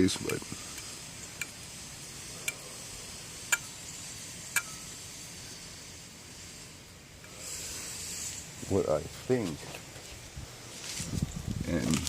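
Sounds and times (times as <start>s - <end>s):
water pump sharp ticks: 0.0s - 8.6s.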